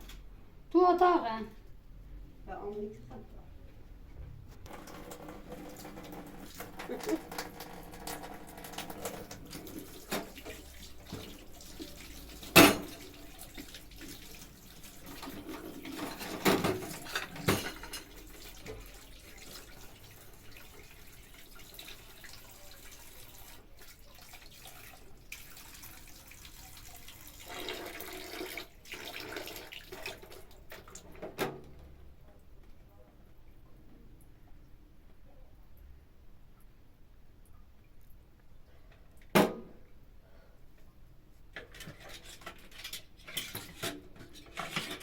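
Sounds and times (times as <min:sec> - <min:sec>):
water running in sink: 0:04.7 - 0:31.4
dishes knocking and clattering: 0:10.0 - 0:11.4, 0:12.4 - 0:13.3, 0:15.1 - 0:18.9.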